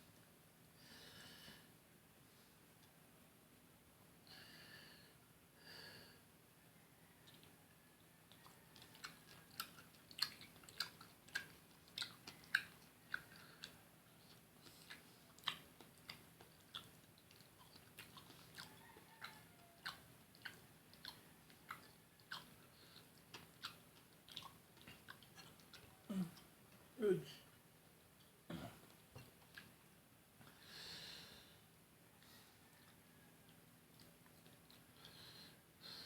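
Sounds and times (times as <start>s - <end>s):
chewing clicks: 8.3s - 26.5s.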